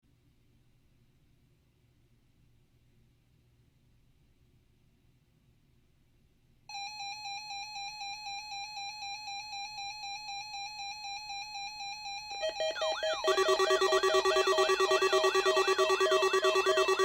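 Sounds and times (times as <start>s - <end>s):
pulsing electronic tone: 12.4s - 17.0s
warbling electronic sweeps: 12.4s - 17.0s.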